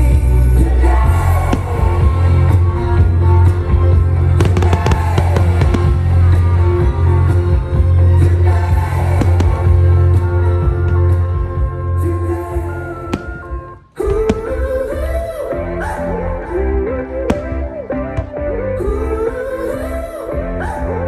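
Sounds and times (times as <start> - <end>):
fireworks bursting and crackling: 1.5 - 2.9, 4.1 - 7.3, 8.0 - 10.2, 12.8 - 15.6, 17.3 - 18.6.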